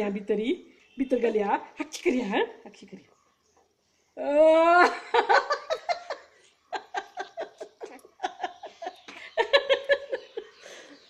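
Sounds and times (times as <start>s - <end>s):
high-pitched giggling: 4.8s - 10.6s.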